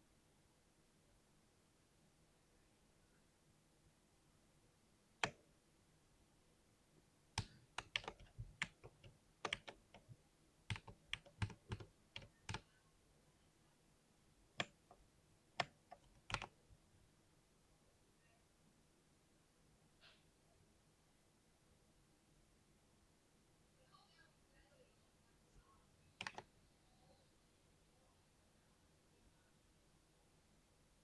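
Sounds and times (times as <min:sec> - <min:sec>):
clicky keyboard typing: 0:05.2 - 0:05.5, 0:07.4 - 0:12.7, 0:14.6 - 0:15.0, 0:15.6 - 0:16.6, 0:26.2 - 0:26.5.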